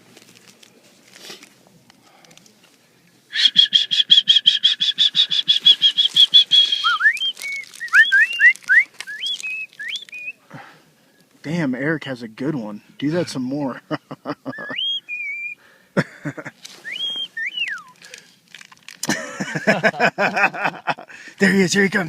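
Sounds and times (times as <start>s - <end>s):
person whistling bird call: 3.3s - 10.4s, 14.5s - 15.6s, 16.8s - 18.0s.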